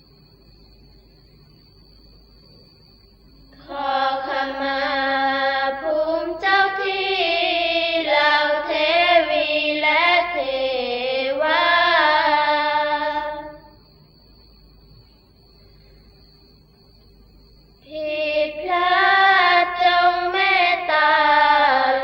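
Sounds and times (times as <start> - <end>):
faint high-pitched whine and hum: 0.0 - 22.0
wavering melodic chanting voice: 3.5 - 13.9, 17.8 - 22.0.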